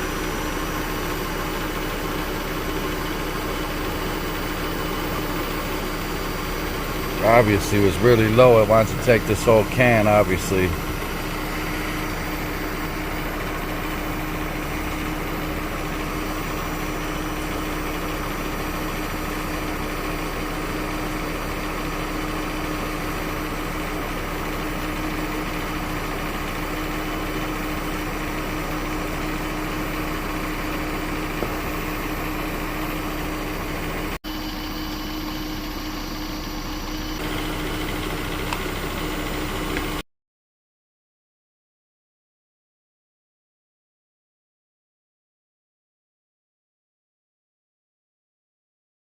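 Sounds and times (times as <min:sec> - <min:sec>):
car engine idling: 0:00.0 - 0:40.0
air conditioning hum: 0:04.0 - 0:12.8.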